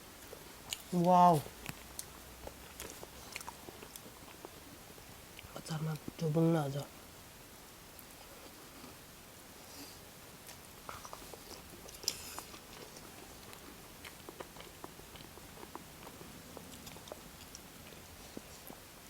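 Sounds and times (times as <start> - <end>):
person chewing crunchy food: 0.2 - 5.5, 10.4 - 19.0.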